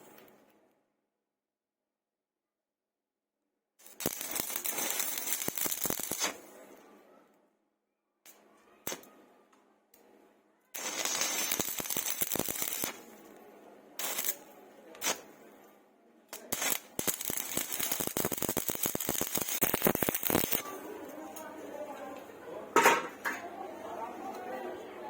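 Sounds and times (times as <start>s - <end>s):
welding arc crackling: 3.8s - 6.6s, 10.7s - 13.4s, 14.0s - 15.4s, 16.3s - 20.8s.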